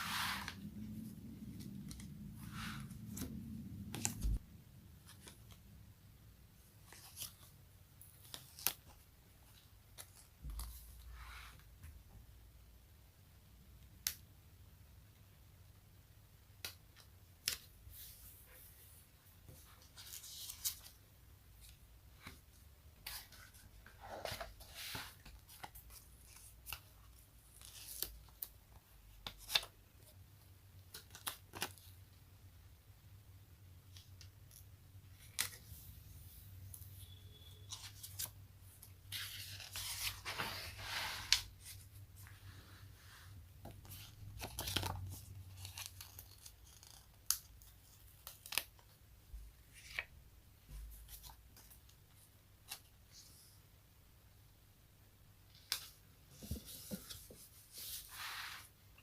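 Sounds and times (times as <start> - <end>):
sticky pages peeling apart: 44.4 - 48.8.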